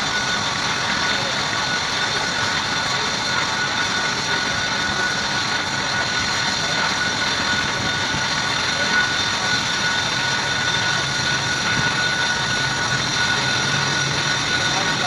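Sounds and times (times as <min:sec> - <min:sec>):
constant high whine: 0:00.0 - 0:15.0
machine whir: 0:00.0 - 0:15.0.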